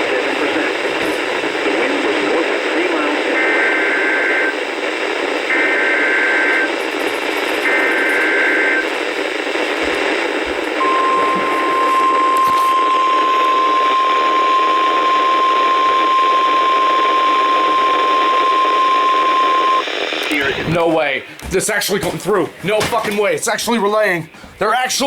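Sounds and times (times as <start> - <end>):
radio hiss: 0.0 - 25.0
steady alarm tone: 10.8 - 19.8.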